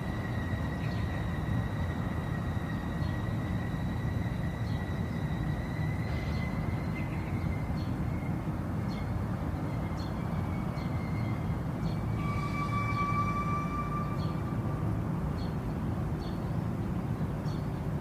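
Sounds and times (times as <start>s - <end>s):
train rumbling: 0.0s - 18.0s
thin high whine: 10.3s - 15.0s.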